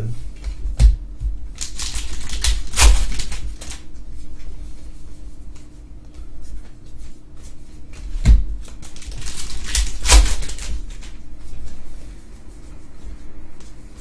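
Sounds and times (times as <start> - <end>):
cards clicking and rustling: 1.6 - 3.8, 8.7 - 11.2.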